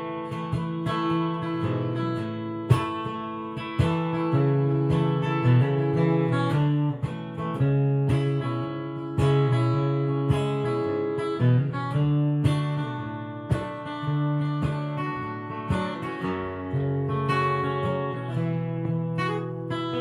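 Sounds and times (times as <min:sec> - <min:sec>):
acoustic guitar strumming chords: 0:00.0 - 0:20.0.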